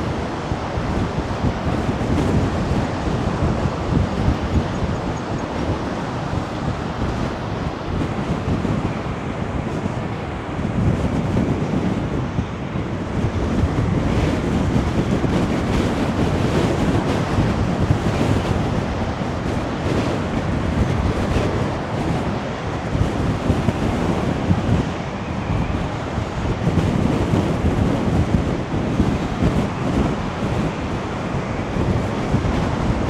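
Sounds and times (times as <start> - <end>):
sea waves crashing against wall: 0.0 - 33.0
wind rumbling on microphone: 0.0 - 33.0.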